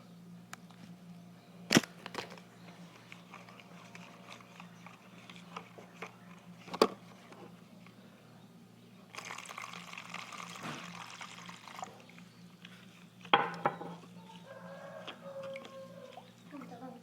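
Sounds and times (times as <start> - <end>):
sharp knocks: 13.3 - 14.0.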